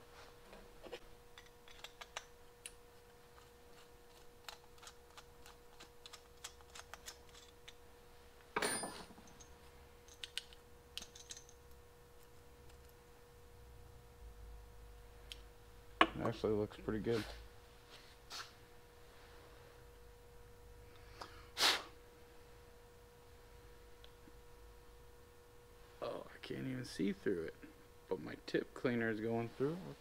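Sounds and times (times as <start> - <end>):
faint steady hum: 0.0 - 30.0
clicks and taps of small parts: 1.4 - 2.8, 10.1 - 11.6.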